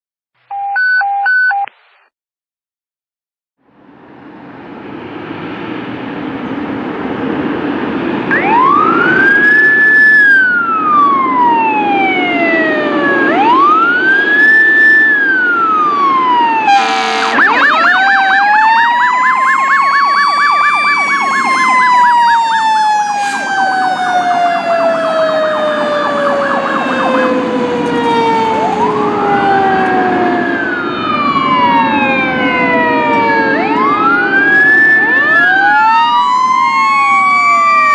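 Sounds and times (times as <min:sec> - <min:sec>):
fire engine siren: 0:08.1 - 0:37.9.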